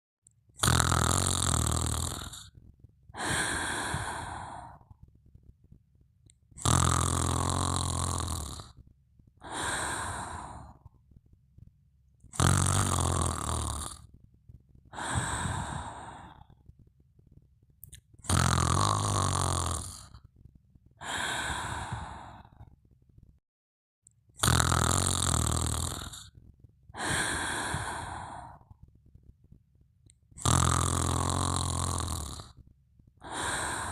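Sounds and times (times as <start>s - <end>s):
person snoring with rattle: 0.5s - 5.0s, 6.5s - 8.8s, 9.4s - 11.0s, 12.2s - 14.2s, 14.9s - 16.7s, 17.8s - 20.3s, 21.0s - 22.7s, 24.3s - 28.8s, 30.3s - 33.9s
soft breathy breath: 3.2s - 5.0s, 9.4s - 11.0s, 14.9s - 16.7s, 21.0s - 22.7s, 27.0s - 28.8s, 33.2s - 33.9s.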